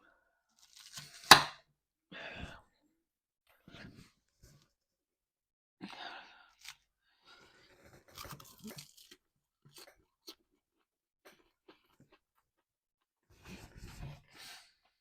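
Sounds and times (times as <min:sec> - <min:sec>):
chewing and crunching salad: 0:07.7 - 0:12.6.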